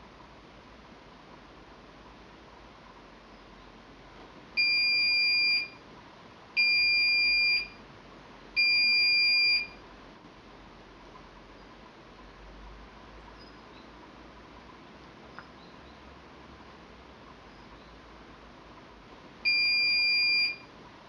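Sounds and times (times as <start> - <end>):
washing machine beeps: 4.6 - 5.8, 6.6 - 7.8, 8.6 - 9.8, 19.4 - 20.7.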